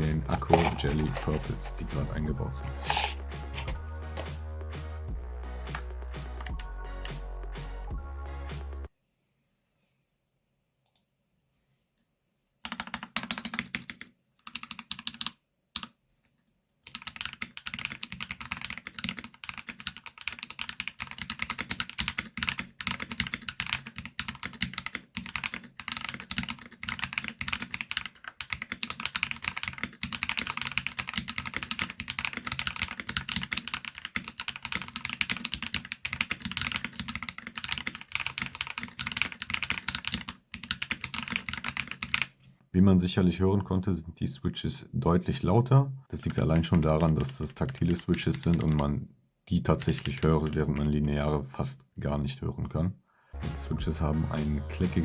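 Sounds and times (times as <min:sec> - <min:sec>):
mechanical keyboard typing: 0:12.6 - 0:15.9, 0:16.8 - 0:42.3, 0:46.2 - 0:48.9, 0:49.8 - 0:50.9.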